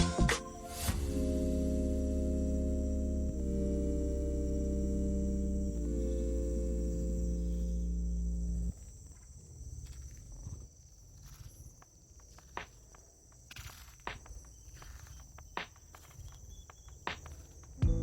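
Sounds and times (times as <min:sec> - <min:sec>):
ambient music chord: 0:00.0 - 0:08.7
high-pitched insect drone: 0:00.5 - 0:08.7.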